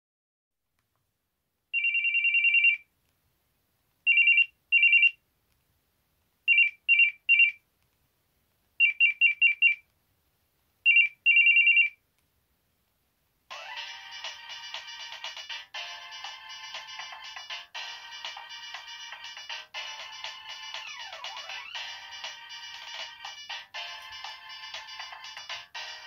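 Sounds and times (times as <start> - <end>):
warbling electronic phone ring: 1.8 - 2.8.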